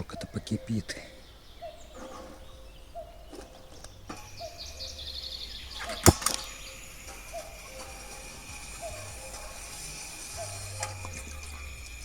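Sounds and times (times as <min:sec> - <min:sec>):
gas burner hissing: 0:03.8 - 0:12.0
sharp clicks: 0:05.8 - 0:08.5.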